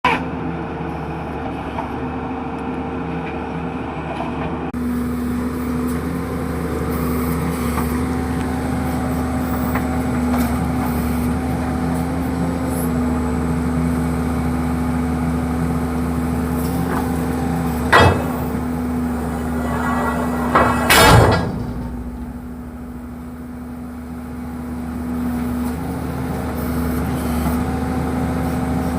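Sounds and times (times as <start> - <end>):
diesel engine running: 0.0 - 28.9
loud metallic knock: 17.9 - 18.7, 19.9 - 22.5.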